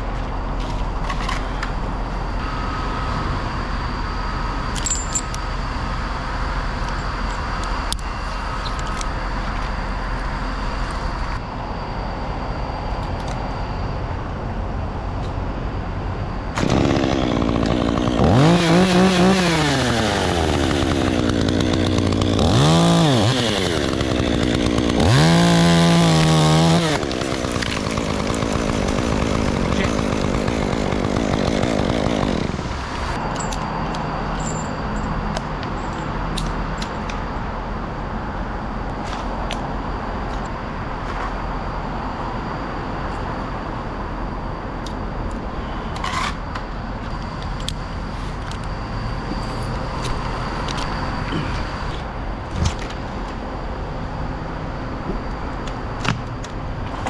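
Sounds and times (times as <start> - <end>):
chainsaw revving: 16.6 - 33.1.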